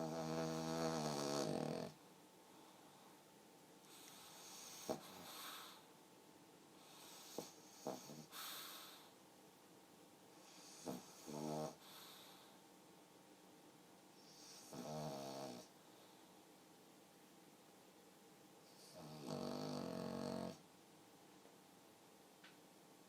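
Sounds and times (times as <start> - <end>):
dog snoring softly: 0.0 - 2.0, 3.8 - 5.9, 6.8 - 9.1, 10.3 - 12.6, 14.2 - 16.2, 18.6 - 20.6.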